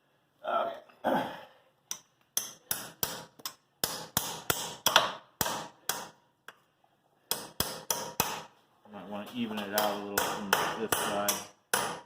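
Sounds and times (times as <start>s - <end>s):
hammer striking metal: 1.9s - 6.2s, 7.3s - 8.5s, 9.6s - 12.0s.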